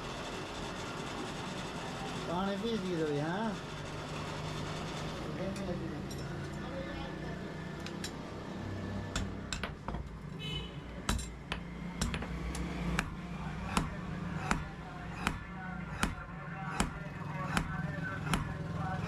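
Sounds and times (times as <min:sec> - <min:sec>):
hammer striking steel on anvil: 0:09.2 - 0:09.8, 0:11.1 - 0:18.6.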